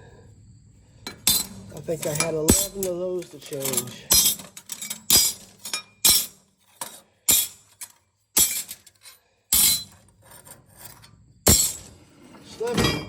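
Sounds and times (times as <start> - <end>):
metal striking metal: 1.1 - 6.4, 11.5 - 11.9.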